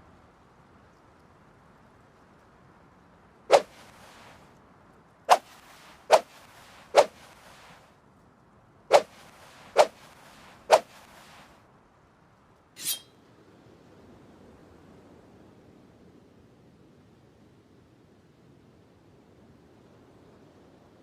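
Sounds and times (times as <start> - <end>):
knife swishing through air: 3.5 - 4.0, 5.3 - 7.7, 8.9 - 11.5, 12.8 - 13.1
sharp metallic clink: 12.8 - 13.1.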